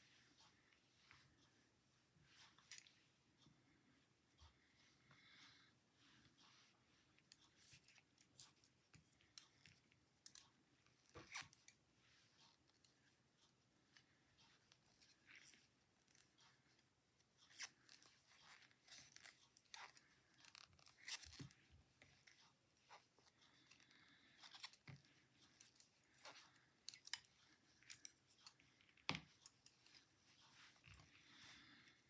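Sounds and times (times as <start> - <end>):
knitting needles clicking: 23.5 - 32.0.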